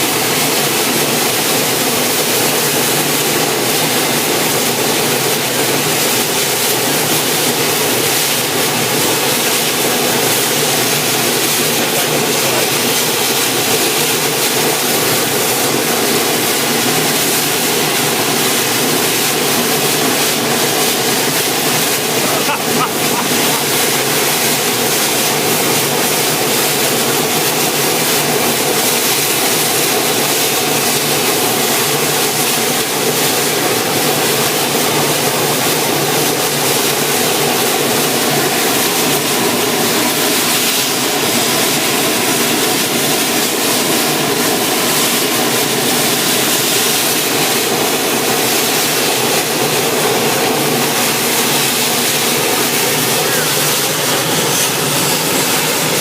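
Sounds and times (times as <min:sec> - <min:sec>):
steam traction engine running: 0:00.0 - 0:56.0.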